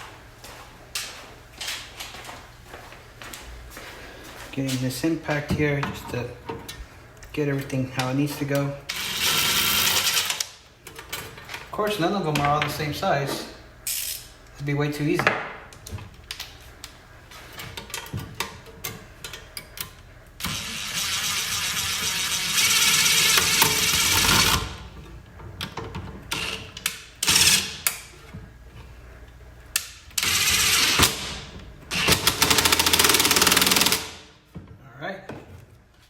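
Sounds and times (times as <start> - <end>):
impact gun running: 31.9 - 34.2.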